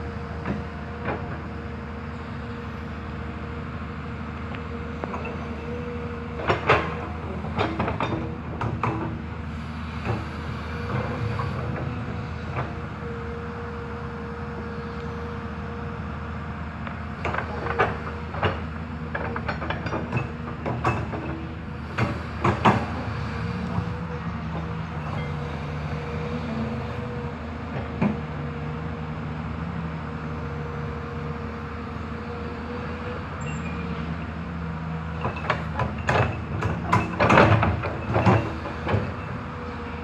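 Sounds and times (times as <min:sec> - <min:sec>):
excavator diesel engine running: 0:00.0 - 0:40.0
sharp clanks and knocks: 0:06.4 - 0:09.2, 0:17.2 - 0:23.1, 0:35.2 - 0:39.3.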